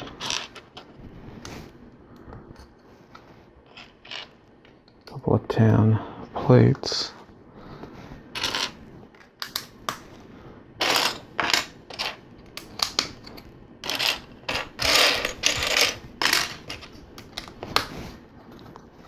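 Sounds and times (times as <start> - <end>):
plastic toy bricks clattering: 13.8 - 17.5.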